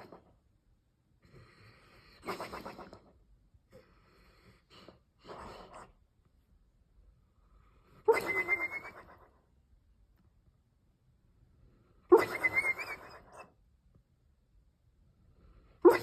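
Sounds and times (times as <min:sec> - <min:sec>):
short snorts: 0:01.2 - 0:03.2, 0:03.8 - 0:06.0.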